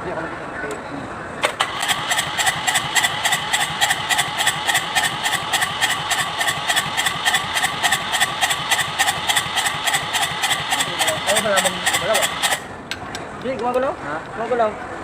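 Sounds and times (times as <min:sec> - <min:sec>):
diesel engine idling: 0:01.4 - 0:12.8.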